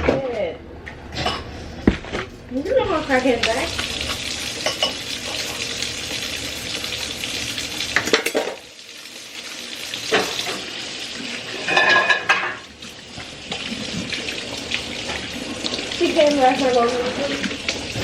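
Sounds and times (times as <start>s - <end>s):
dishes and utensils clattering: 1.1s - 1.5s, 4.6s - 5.6s, 8.0s - 8.6s, 10.1s - 10.7s, 11.5s - 12.6s.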